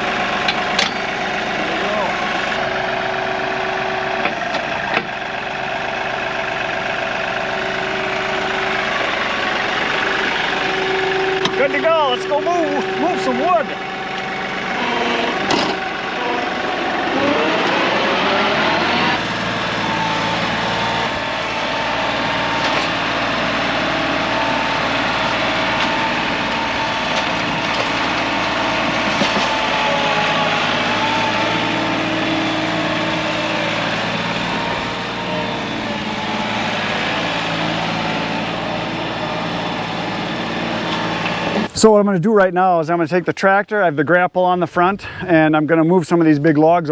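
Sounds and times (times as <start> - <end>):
tractor engine revving: 0.0 - 43.9.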